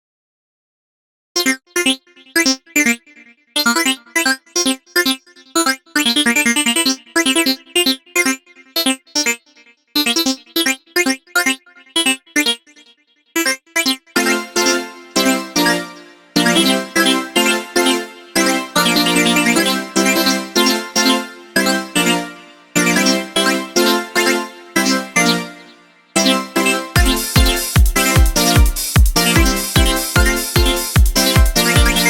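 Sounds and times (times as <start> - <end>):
clipped rhythmic chords: 18.4 - 23.4, 26.2 - 32.0
held chord with bass notes: 27.0 - 32.0.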